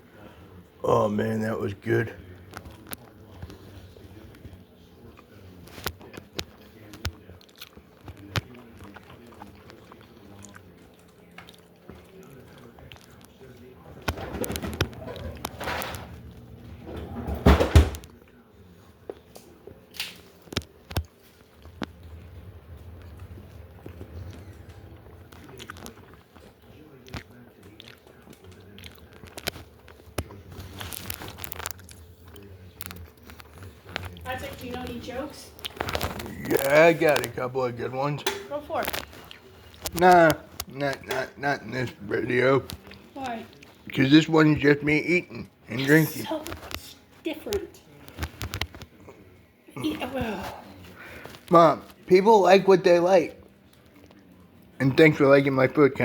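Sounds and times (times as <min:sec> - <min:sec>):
person chewing: 0:06.0 - 0:13.7, 0:19.9 - 0:34.3, 0:35.6 - 0:37.4, 0:38.8 - 0:43.9
low steady hum: 0:13.4 - 0:27.8
crinkling: 0:19.9 - 0:43.9.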